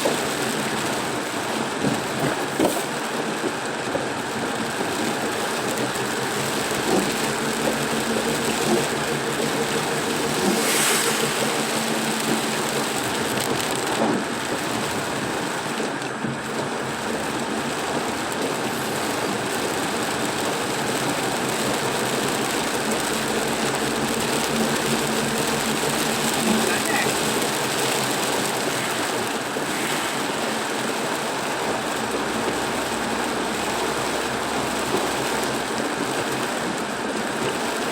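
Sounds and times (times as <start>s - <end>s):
heavy rain on car: 0.0s - 37.9s
tyres on wet road: 0.0s - 37.9s
water swish: 10.0s - 13.0s, 28.7s - 31.8s.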